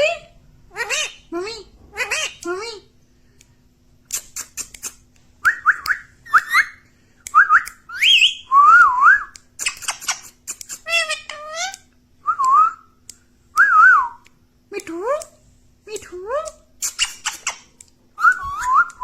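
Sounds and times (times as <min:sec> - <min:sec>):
parrot whistling: 0:05.5 - 0:06.8, 0:07.4 - 0:09.3, 0:18.2 - 0:19.0
parrot harsh chirps: 0:06.2 - 0:06.8, 0:09.6 - 0:11.9, 0:16.8 - 0:17.7.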